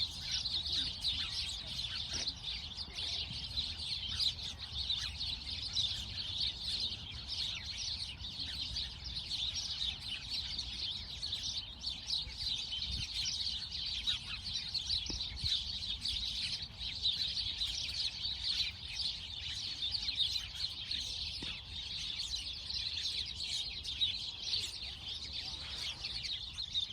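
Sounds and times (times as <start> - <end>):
sparrows chirping: 0.0 - 26.9.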